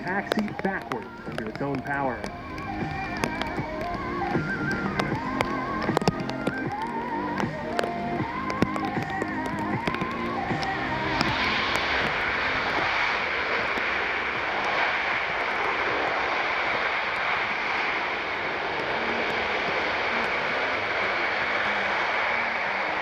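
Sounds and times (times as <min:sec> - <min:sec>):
jet engines roaring: 0:00.0 - 0:23.0.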